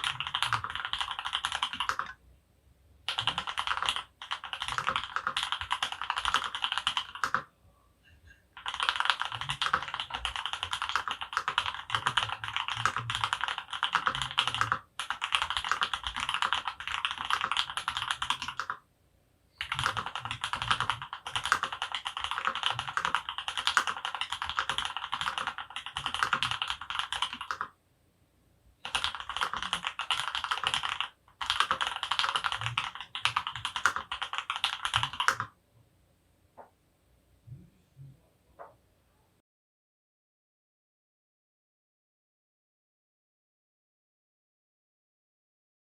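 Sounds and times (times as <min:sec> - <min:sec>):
fast typing on mechanical keyboard: 0:00.0 - 0:02.2, 0:03.1 - 0:07.5, 0:08.6 - 0:18.8, 0:19.6 - 0:27.7, 0:28.8 - 0:35.5.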